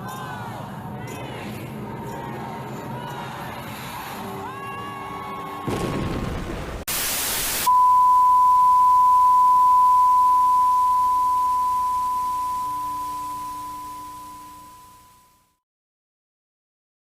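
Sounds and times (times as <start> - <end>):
loud static burst: 5.7 - 7.7
steady electronic tone: 7.6 - 15.5.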